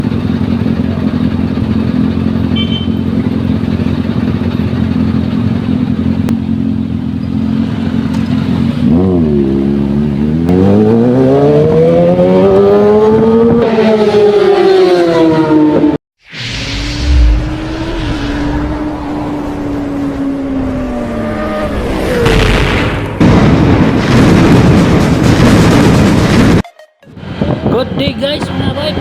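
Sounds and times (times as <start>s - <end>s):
motorcycle engine revving: 0.0s - 15.9s, 16.8s - 23.2s.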